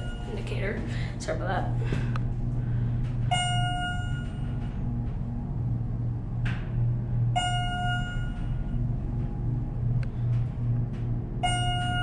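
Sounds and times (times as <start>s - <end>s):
electronic floor chime: 0.0s - 0.5s, 3.3s - 4.7s, 7.4s - 8.8s
elevator hydraulic hum: 0.0s - 12.0s.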